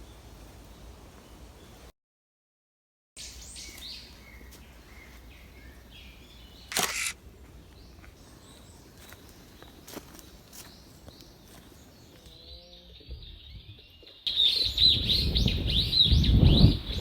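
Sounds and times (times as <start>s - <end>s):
faint outdoor background: 3.2s - 17.0s
small birds chirping: 3.2s - 17.0s
camera shutter clicking: 6.7s - 7.2s.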